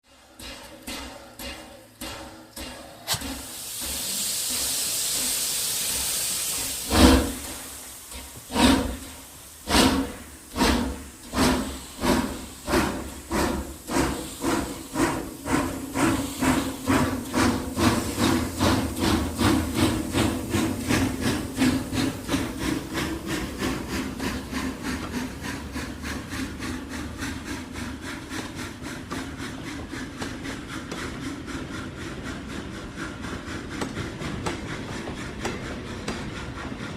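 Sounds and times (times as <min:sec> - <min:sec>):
steam locomotive chuffing: 0:00.0 - 0:36.9
hiss of released steam: 0:03.0 - 0:26.9.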